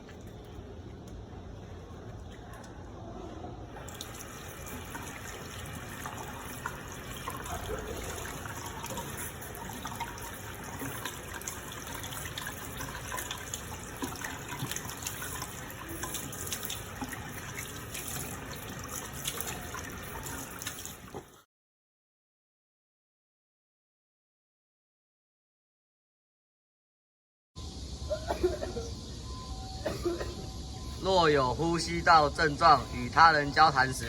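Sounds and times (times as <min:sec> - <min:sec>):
tap water running into sink: 0:03.8 - 0:21.4.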